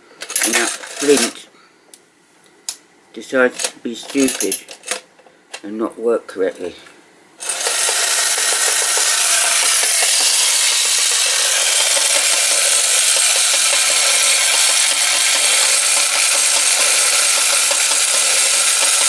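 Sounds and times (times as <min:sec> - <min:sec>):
wind-up toy tank scraping rasp: 0:00.4 - 0:01.3, 0:07.4 - 0:19.0.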